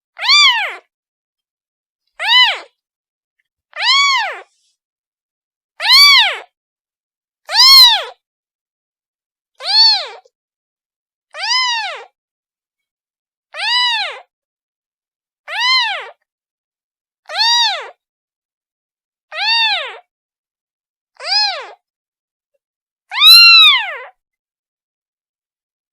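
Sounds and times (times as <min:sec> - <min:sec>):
kitten meowing: 0:00.2 - 0:00.9, 0:02.2 - 0:02.7, 0:03.8 - 0:04.5, 0:05.8 - 0:06.5, 0:07.5 - 0:08.2, 0:09.6 - 0:10.3, 0:11.4 - 0:12.1, 0:13.6 - 0:14.3, 0:15.5 - 0:16.2, 0:17.3 - 0:18.0, 0:19.3 - 0:20.0, 0:21.2 - 0:21.8, 0:23.1 - 0:24.1.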